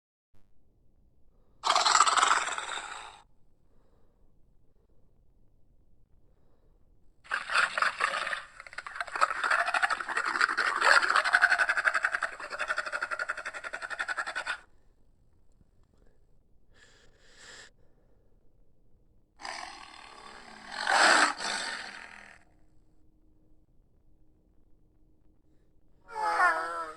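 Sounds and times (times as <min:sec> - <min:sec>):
creature roaring: 0:01.6 - 0:03.2, 0:07.3 - 0:14.6, 0:19.4 - 0:22.4, 0:26.1 - 0:26.9
faint creature call: 0:01.6 - 0:03.2, 0:07.3 - 0:14.6, 0:19.4 - 0:22.4, 0:26.1 - 0:26.9.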